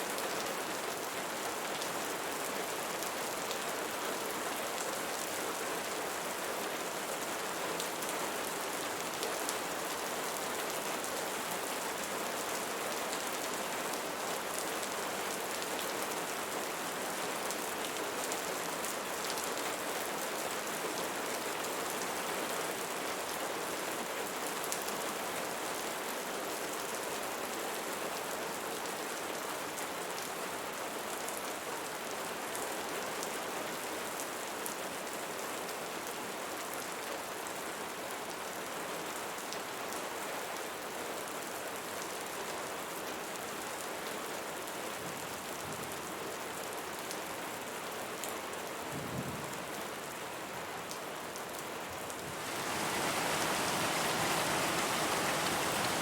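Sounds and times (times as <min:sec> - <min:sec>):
rain pattering: 0:52.0 - 0:56.0.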